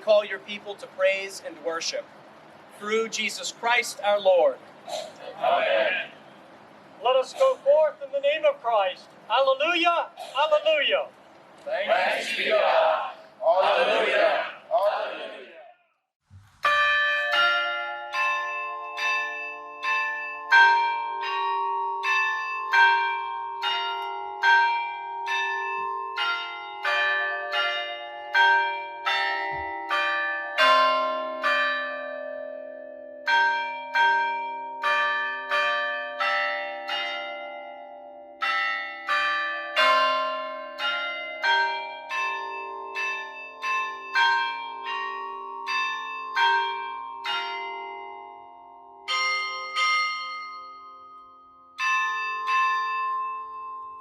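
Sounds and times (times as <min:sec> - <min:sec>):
church bells playing a hymn: 0:16.6 - 0:54.0.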